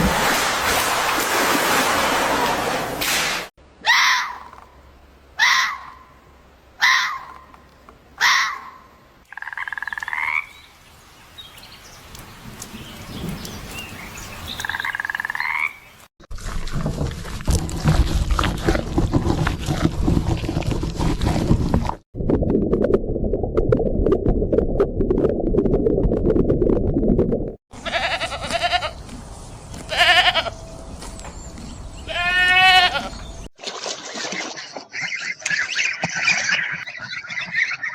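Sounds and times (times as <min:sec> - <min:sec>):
pulsing animal calls: 0:34.4 - 0:37.9.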